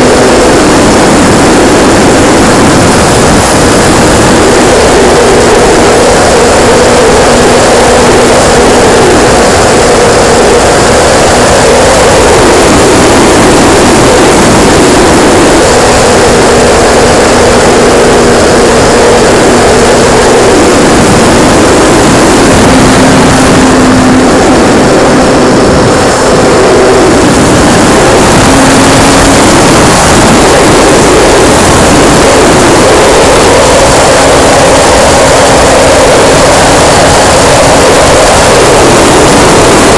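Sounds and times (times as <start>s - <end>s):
model plane motor droning: 0.0s - 39.9s.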